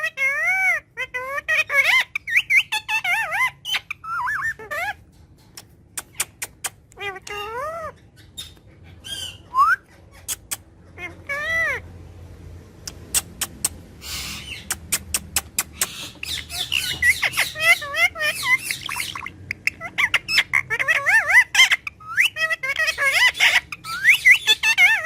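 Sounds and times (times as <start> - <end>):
parrot squawking and whistling: 0.0 - 5.0, 6.0 - 11.8, 12.9 - 25.0
parrot clicking: 12.9 - 13.9, 14.6 - 16.3.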